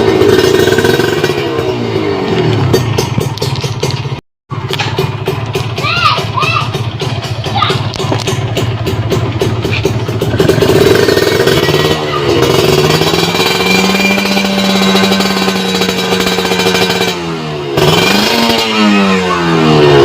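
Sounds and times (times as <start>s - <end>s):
two-stroke motorcycle engine revving: 0.0s - 20.0s.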